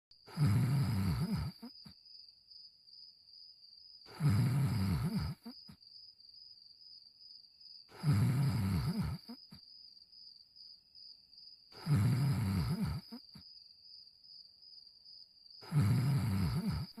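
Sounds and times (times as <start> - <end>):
cartoon dog snoring: 0.2 - 2.0, 4.0 - 5.8, 7.9 - 9.6, 11.7 - 13.4, 15.6 - 17.0.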